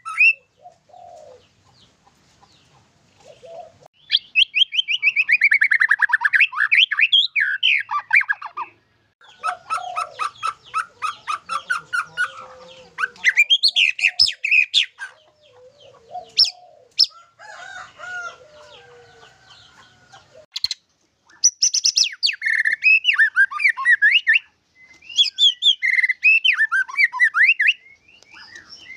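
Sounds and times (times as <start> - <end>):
songbird singing whistles and trills: 0.0 - 0.5, 4.0 - 11.2, 20.6 - 28.9.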